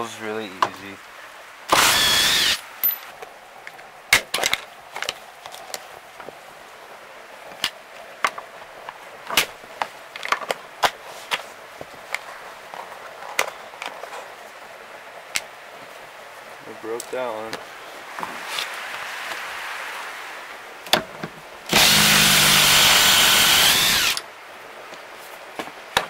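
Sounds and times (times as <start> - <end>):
power drill running: 1.7 - 2.6, 21.7 - 24.2.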